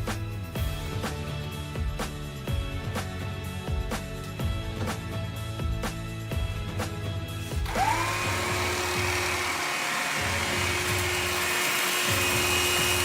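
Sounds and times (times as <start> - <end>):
background music with beat: 0.0 - 13.0
vacuum cleaner motor whining: 7.6 - 13.0.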